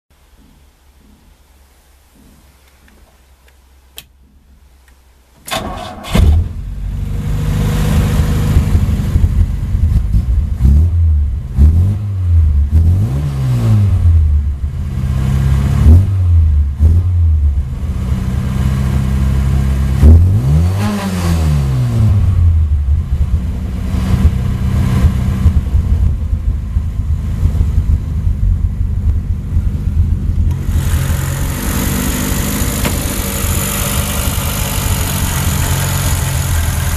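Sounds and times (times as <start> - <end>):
click: 2.6 - 4.1
car engine starting and revving: 5.5 - 36.9.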